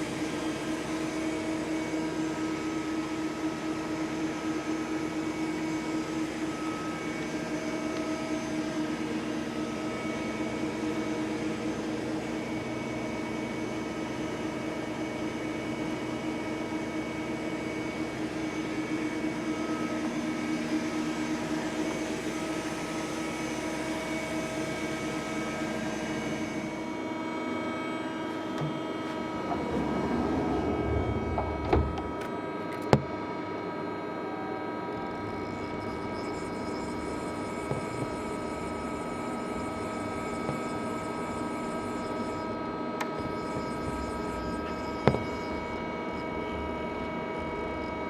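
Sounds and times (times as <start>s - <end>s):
machine hum and whine: 0.0s - 48.0s
rough machine noise: 28.0s - 33.2s, 35.1s - 47.7s.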